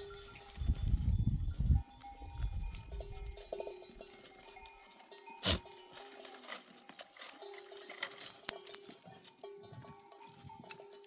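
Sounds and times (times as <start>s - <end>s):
sheep bells ringing: 0.0s - 11.0s.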